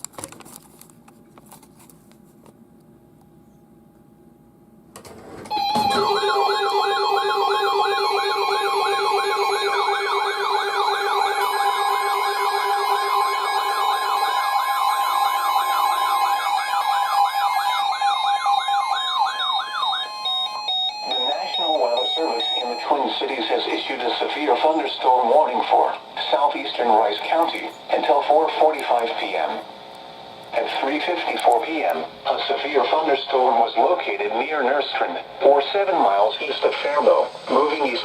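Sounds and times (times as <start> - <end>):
quiet hum: 0.0 - 6.6
warbling siren-like alarm tones: 5.5 - 23.8
steady warning tone: 5.5 - 38.0.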